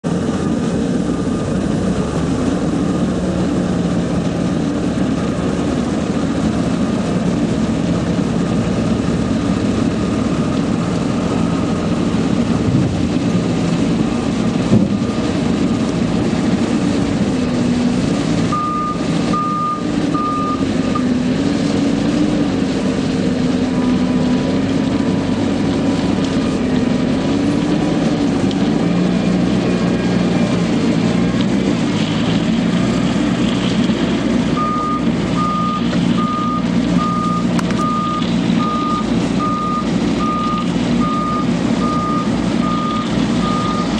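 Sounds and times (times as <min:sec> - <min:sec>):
diesel engine running: 0:00.0 - 0:43.9
short warning beeps: 0:18.5 - 0:21.1, 0:34.6 - 0:43.9.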